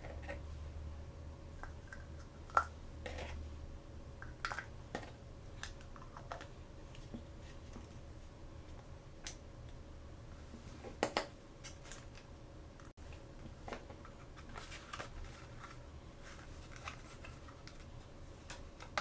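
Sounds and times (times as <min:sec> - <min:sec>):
plastic packaging clicks and crinkles: 0:13.6 - 0:19.0.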